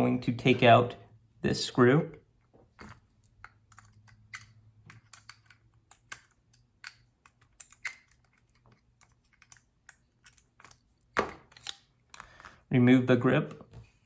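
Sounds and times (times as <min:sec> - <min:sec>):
small metallic clicks: 0:02.8 - 0:10.9.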